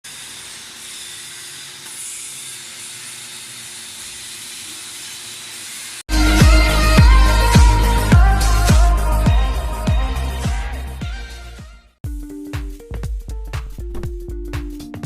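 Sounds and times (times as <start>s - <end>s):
welding arc hissing: 0.0s - 6.4s
electronic music with heavy bass: 6.1s - 15.0s.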